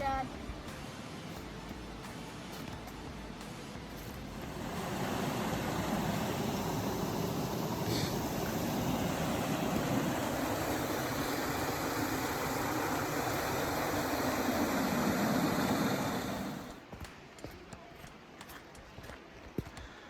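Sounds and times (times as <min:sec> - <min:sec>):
creek water rushing over rocks: 0:04.0 - 0:17.2.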